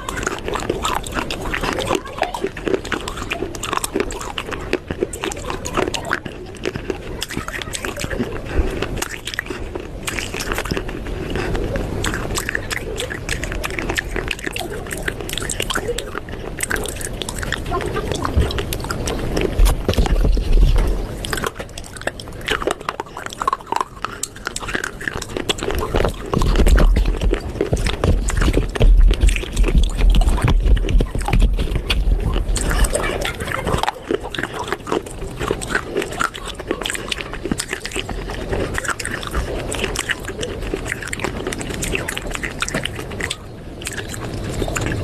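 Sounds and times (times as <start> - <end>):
crunching hard clay pieces: 0.0 - 45.0
deep rumble: 26.0 - 33.1.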